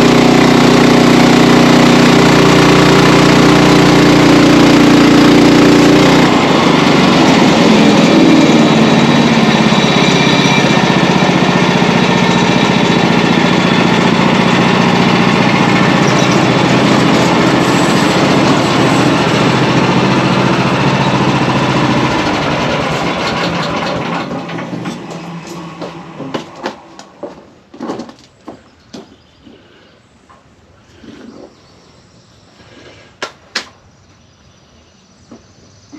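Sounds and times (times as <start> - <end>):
sawmill engine cutting log: 0.0 - 28.2.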